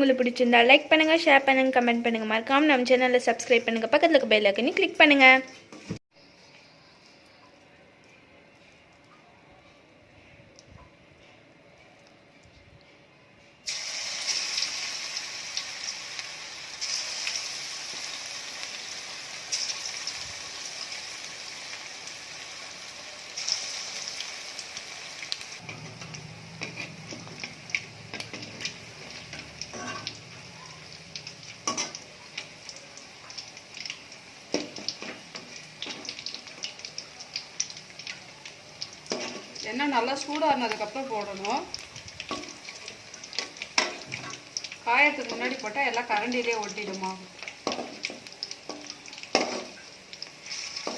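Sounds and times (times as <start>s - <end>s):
chicken deep-frying in oil: 13.6s - 50.9s.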